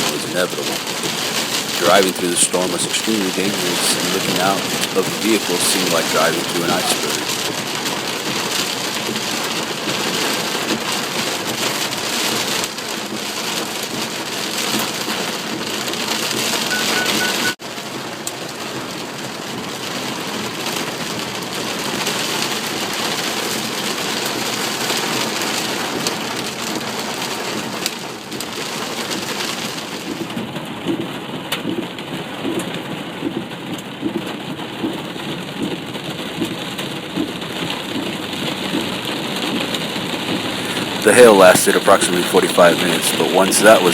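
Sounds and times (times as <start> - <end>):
hail and heavy rain pelting: 0.0 - 16.8, 17.7 - 43.9.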